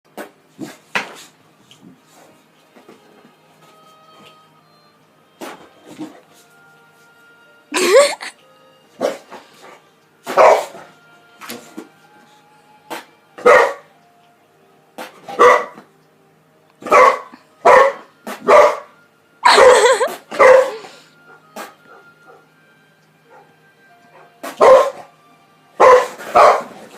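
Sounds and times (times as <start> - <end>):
dog barking: 10.3 - 10.7, 13.4 - 13.9, 15.3 - 15.8, 16.8 - 18.9, 19.5 - 20.8, 24.5 - 25.1, 25.8 - 26.8.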